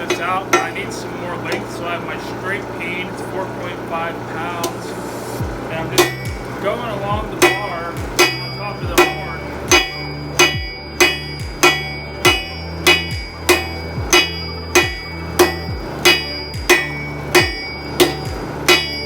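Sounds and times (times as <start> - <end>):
hammer striking steel on anvil: 0.0 - 0.9, 5.8 - 19.0.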